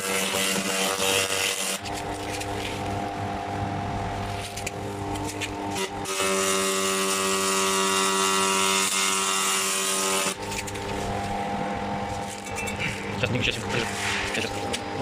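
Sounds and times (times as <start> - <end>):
machine hum: 0.0 - 15.0
laser buzzing on metal: 4.5 - 15.0.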